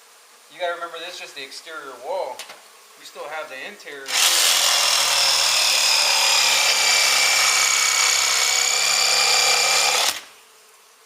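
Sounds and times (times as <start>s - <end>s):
loud hiss: 3.9s - 10.4s
power tool motor whine: 4.1s - 10.3s.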